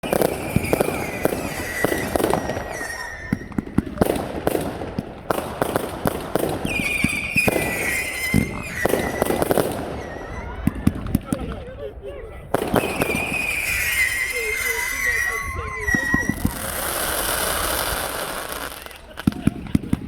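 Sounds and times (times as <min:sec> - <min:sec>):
high falling firework whistles: 0:00.0 - 0:04.6, 0:06.4 - 0:11.1, 0:12.6 - 0:19.2
fireworks bangs and cracks: 0:00.0 - 0:11.7, 0:12.5 - 0:20.0.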